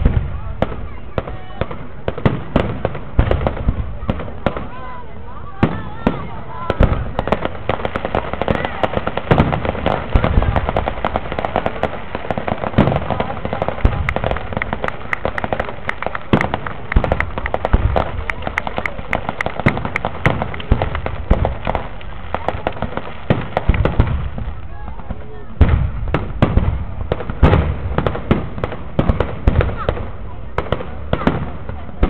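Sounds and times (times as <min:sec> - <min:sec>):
fireworks crackling: 0:00.0 - 0:32.0
deep firework shell booms: 0:16.3 - 0:18.9, 0:19.6 - 0:32.0.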